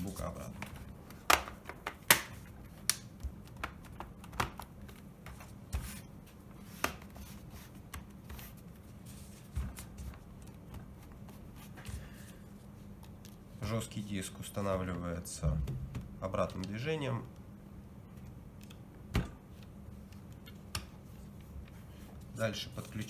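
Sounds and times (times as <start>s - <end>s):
plastic cover snapping into place: 1.2s - 4.6s.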